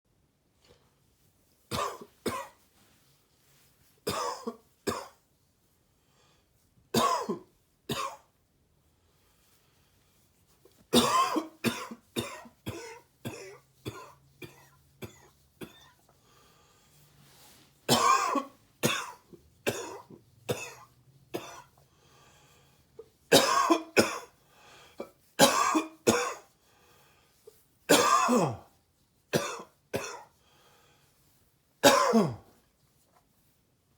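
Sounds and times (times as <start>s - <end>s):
man coughing: 11.0s - 15.8s, 17.9s - 20.8s, 23.3s - 24.3s, 25.4s - 26.4s, 27.9s - 28.6s, 31.8s - 32.5s.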